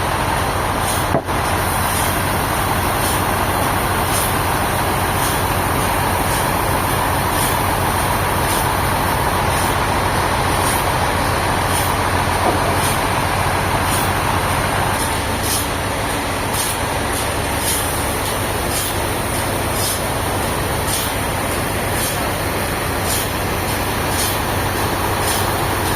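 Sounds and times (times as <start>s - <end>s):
low machine rumble: 0.0s - 25.9s
saw cutting through log: 0.8s - 15.8s, 16.4s - 20.1s.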